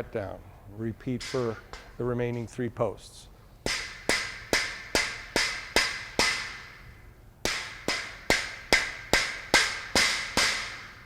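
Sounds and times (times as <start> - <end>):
rubber mallet striking steel post: 3.7 - 11.0.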